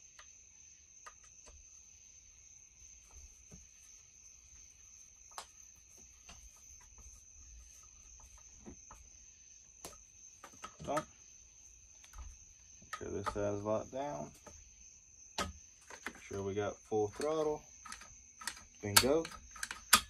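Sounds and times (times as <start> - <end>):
small parts clicking and tapping: 12.0 - 14.6, 15.4 - 20.0.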